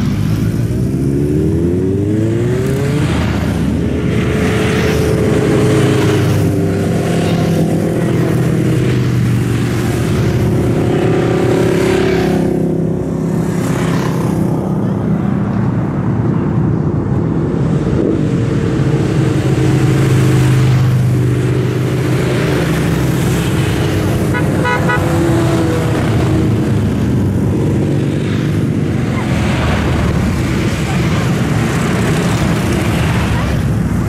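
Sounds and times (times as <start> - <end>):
motorcycles riding past: 0.0 - 34.0
rapid horn beeping: 24.2 - 25.2.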